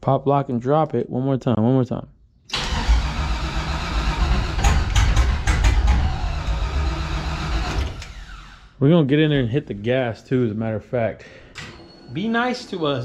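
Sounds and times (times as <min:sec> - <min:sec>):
engine cranking on starter: 0:02.5 - 0:08.8.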